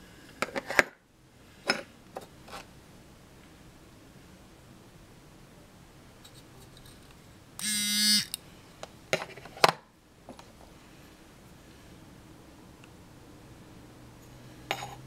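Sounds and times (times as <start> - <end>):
grinder piece buzzing: 7.6 - 8.4.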